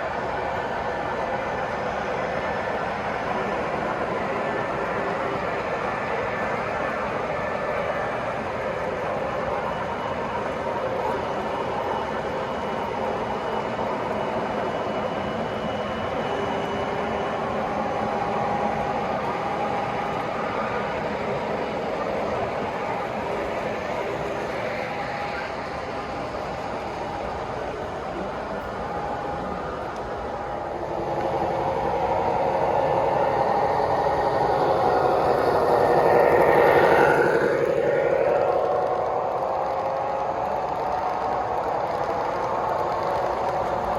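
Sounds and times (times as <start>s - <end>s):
model train wheels rumbling on track: 0.0s - 43.9s
faint motor hum: 26.6s - 43.9s.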